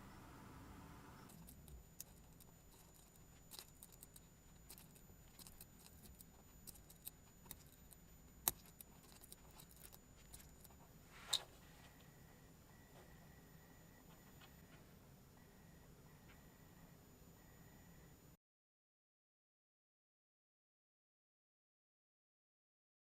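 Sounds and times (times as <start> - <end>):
low hum: 0.0 - 18.4
small metal parts clicking: 1.3 - 10.8
metal part scraping: 1.3 - 11.5.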